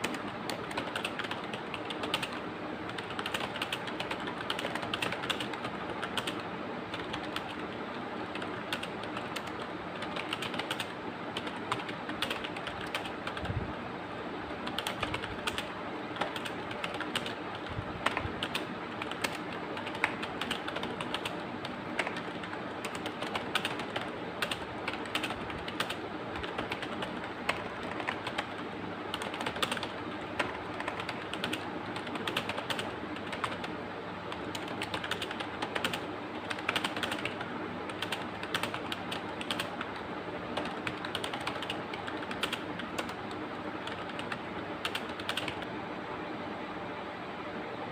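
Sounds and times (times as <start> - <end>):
fast typing on keyboard: 0.0 - 13.6, 14.5 - 45.7.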